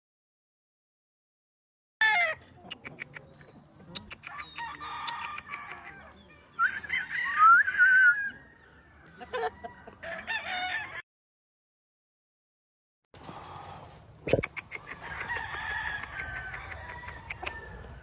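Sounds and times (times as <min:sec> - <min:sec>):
roosters crowing: 0:02.0 - 0:02.5, 0:04.2 - 0:11.0, 0:14.8 - 0:18.0
chicken clucking: 0:02.2 - 0:10.4, 0:14.2 - 0:17.8.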